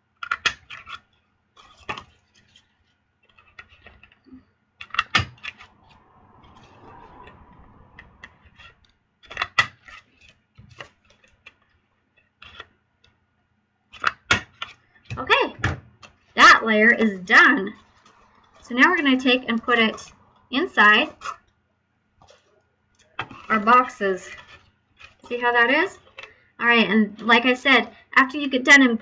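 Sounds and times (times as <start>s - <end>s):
paper rustling: 0.7s - 4.2s.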